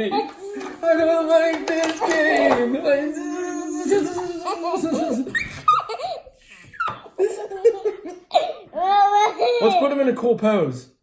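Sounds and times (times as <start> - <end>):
child laughing and giggling: 3.9 - 9.9.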